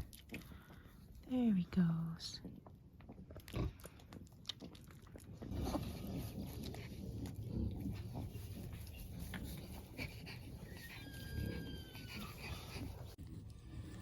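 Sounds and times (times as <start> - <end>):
pigs grunting: 5.4 - 14.0.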